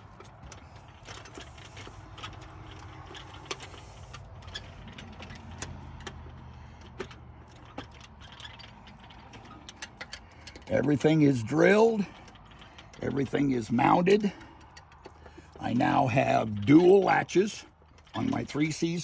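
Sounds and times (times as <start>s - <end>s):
sharp clicks and knocks: 0.0s - 11.3s, 12.0s - 18.7s.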